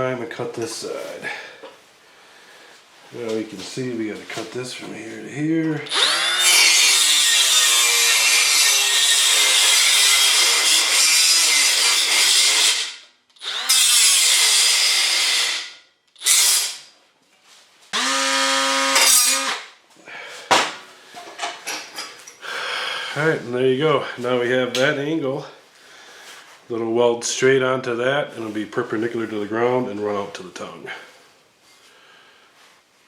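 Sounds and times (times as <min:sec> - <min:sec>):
power tool cutting metal: 0:05.9 - 0:16.8, 0:18.0 - 0:19.7.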